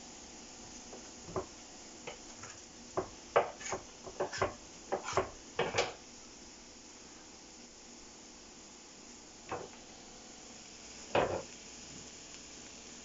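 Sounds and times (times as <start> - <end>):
vegetables sauteing: 0.0 - 13.0
spatula scraping a frying pan: 2.1 - 2.7, 3.3 - 6.0.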